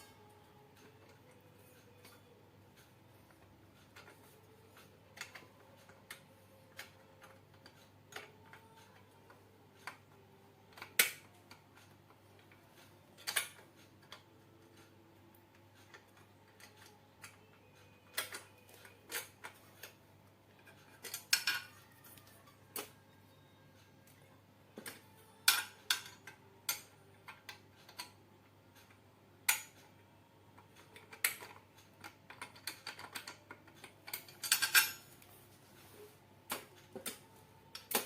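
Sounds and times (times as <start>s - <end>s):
faint steady hum: 0.0s - 38.0s
metal parts and tools clinking: 18.1s - 23.0s, 30.8s - 35.4s.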